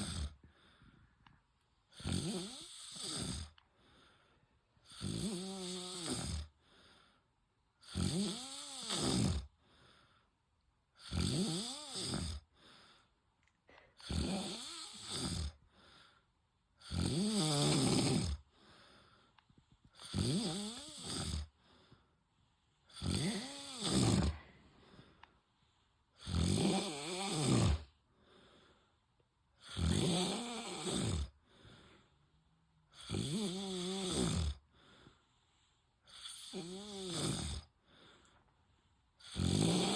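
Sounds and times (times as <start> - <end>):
man snoring: 0.0 - 0.4, 1.9 - 3.6, 4.8 - 6.6, 7.8 - 9.5, 11.0 - 12.6, 14.0 - 16.0, 16.8 - 18.5, 20.0 - 21.7, 22.9 - 25.0, 26.2 - 28.0, 29.6 - 31.4, 32.9 - 34.9, 36.1 - 37.7, 39.2 - 39.9.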